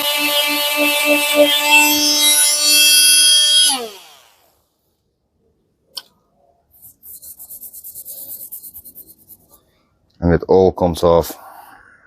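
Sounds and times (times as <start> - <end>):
oscillating multitool whine: 0.0 - 4.4.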